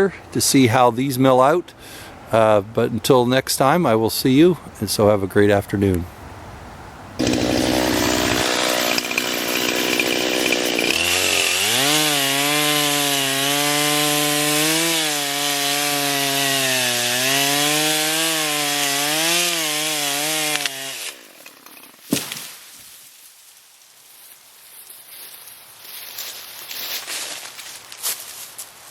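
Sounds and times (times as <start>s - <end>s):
small engine cutting wood: 7.2s - 22.0s.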